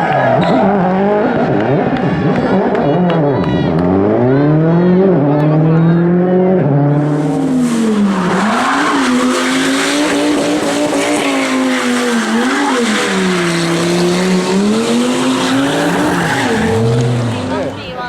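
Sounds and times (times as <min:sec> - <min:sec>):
rally car engine revving: 0:00.0 - 0:18.0
tyres skidding: 0:00.0 - 0:18.0.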